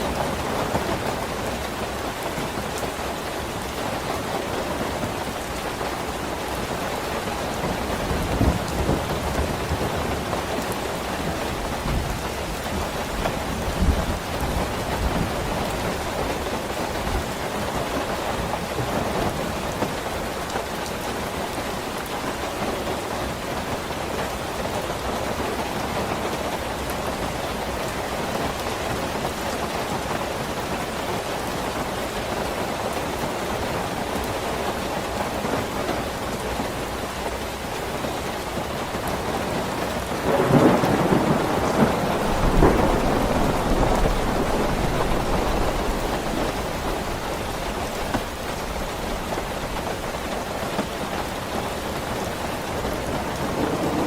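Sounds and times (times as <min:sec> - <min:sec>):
rain falling: 0:00.0 - 0:54.0
thunder crack and rumbling: 0:07.6 - 0:17.4, 0:40.1 - 0:49.8, 0:52.8 - 0:54.0.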